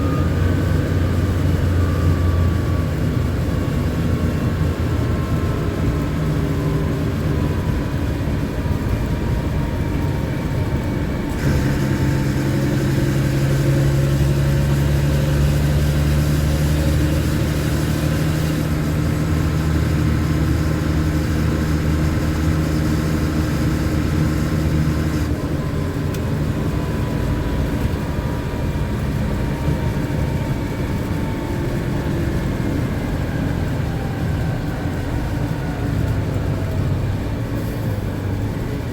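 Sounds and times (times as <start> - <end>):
truck diesel engine running: 0.0 - 38.9.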